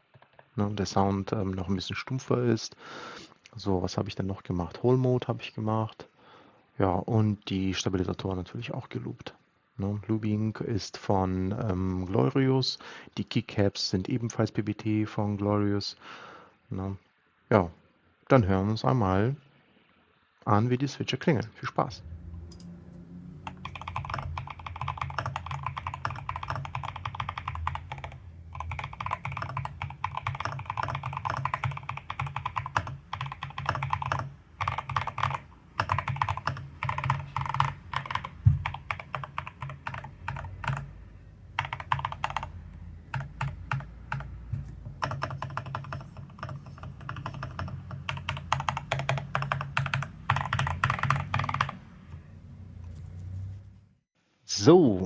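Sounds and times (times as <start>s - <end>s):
mechanical keyboard keys clacking: 23.3s - 52.2s.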